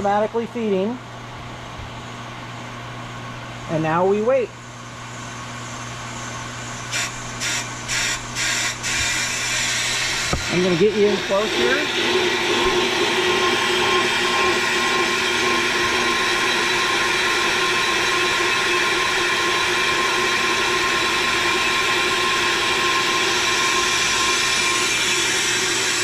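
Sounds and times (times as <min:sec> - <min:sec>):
brake lathe whirring: 0:05.4 - 0:26.0.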